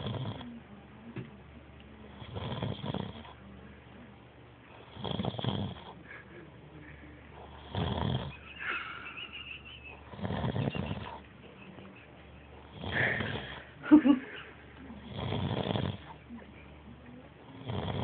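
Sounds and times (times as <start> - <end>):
person snoring: 7.5 - 8.4, 10.1 - 11.1, 12.7 - 13.6, 15.0 - 16.0, 17.6 - 18.0.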